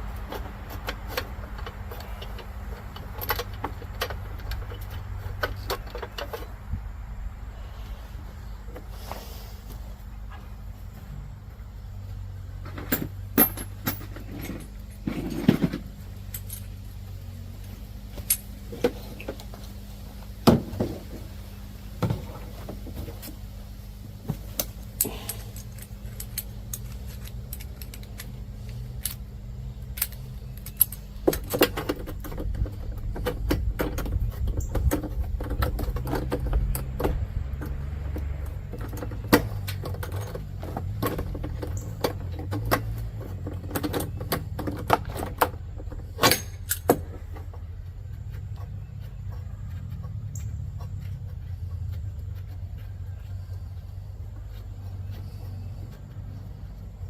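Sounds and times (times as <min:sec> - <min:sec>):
metal tools clinking and rattling: 0:00.2 - 0:06.6, 0:12.6 - 0:17.0, 0:25.0 - 0:37.0, 0:38.6 - 0:47.3.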